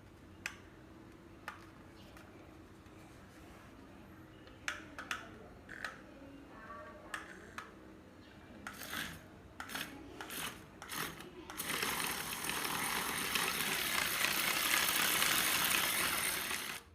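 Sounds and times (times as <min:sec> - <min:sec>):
small geared mechanism rattling: 0:08.7 - 0:16.9.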